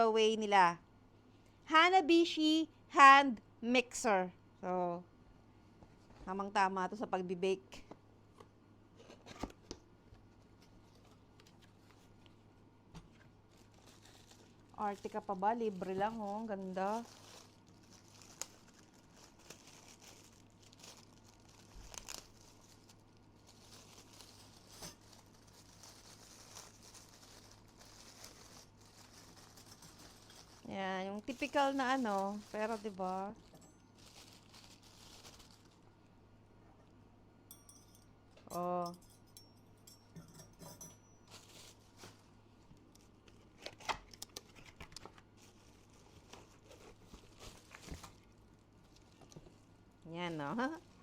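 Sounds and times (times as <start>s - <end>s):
packaging rustling and crinkling: 13.0s - 35.9s, 41.2s - 49.9s.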